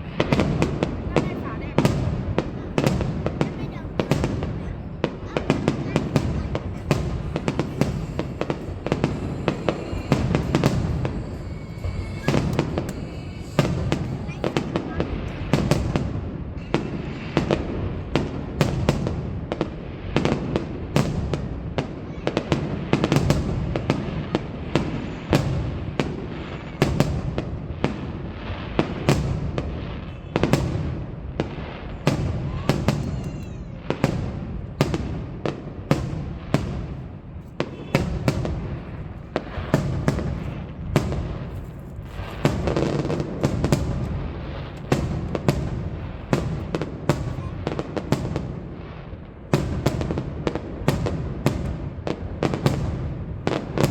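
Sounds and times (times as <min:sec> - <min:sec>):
fireworks bangs and booms: 0:00.0 - 0:53.9
low rumble: 0:06.0 - 0:16.6.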